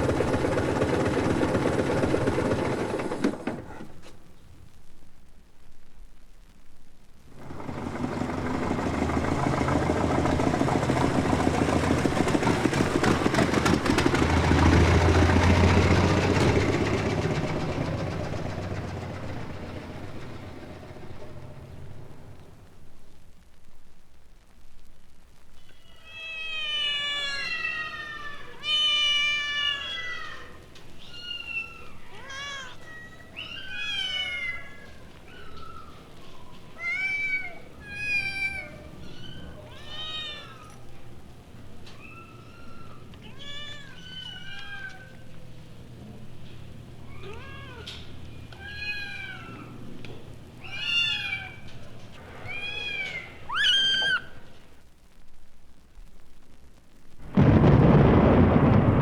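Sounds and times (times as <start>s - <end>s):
kittens high calls: 25.6s - 45.5s, 46.9s - 54.7s
cats meowing: 25.6s - 45.6s, 46.6s - 54.7s.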